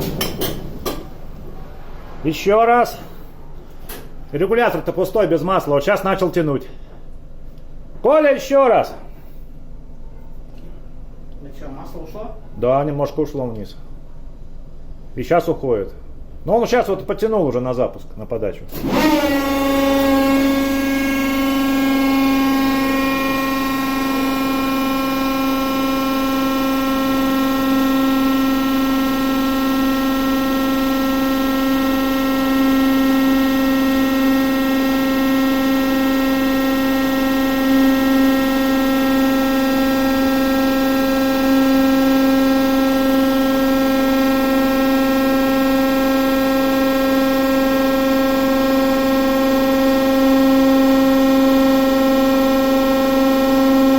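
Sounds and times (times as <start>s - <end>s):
high whine: 18.8s - 53.9s.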